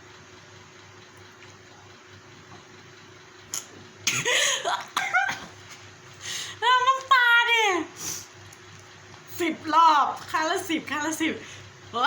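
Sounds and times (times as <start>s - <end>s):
room hiss: 7.8s - 8.4s.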